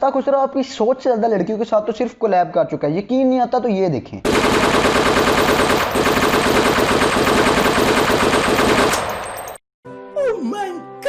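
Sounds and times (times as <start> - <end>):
rapid automatic gunfire: 4.3 - 9.3.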